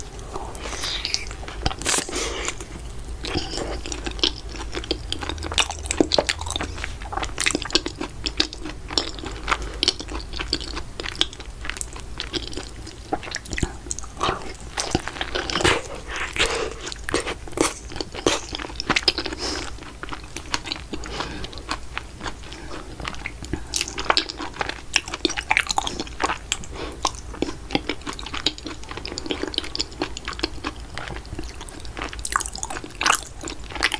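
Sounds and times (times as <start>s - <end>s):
biting and chewing food: 0.1s - 33.9s.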